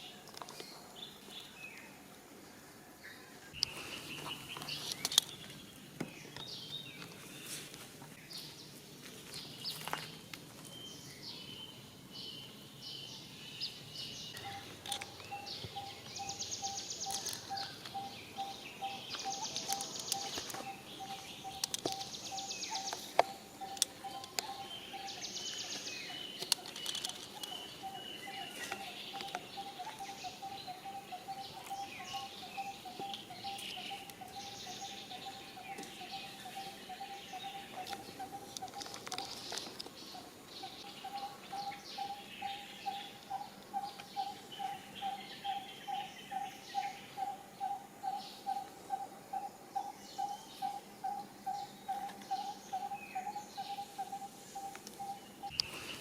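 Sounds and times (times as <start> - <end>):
birds chirping and calling: 3.0 - 8.7, 9.3 - 56.0
high insect trills: 12.4 - 56.0.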